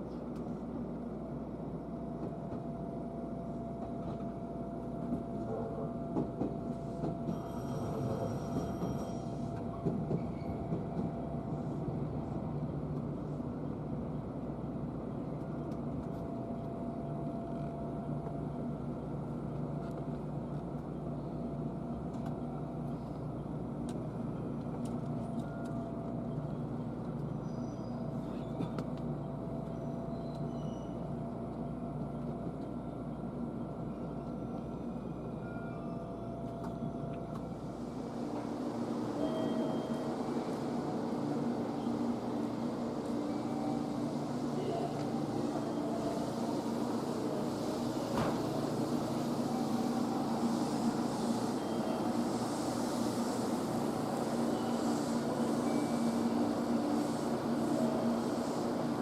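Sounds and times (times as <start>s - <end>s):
train rumbling on rails: 0.0s - 59.0s.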